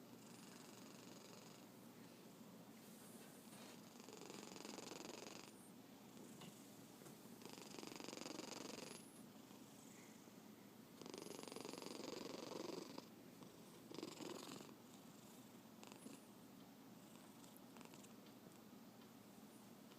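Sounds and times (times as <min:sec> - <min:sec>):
cat snoring softly: 0:00.1 - 0:01.7, 0:03.6 - 0:06.6, 0:07.4 - 0:10.2, 0:11.0 - 0:16.3, 0:17.0 - 0:18.2.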